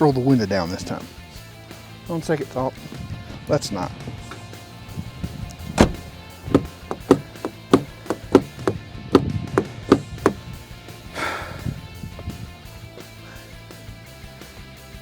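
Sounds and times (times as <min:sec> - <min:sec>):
background music: 0:00.0 - 0:15.0
sharp knocks: 0:05.7 - 0:10.4.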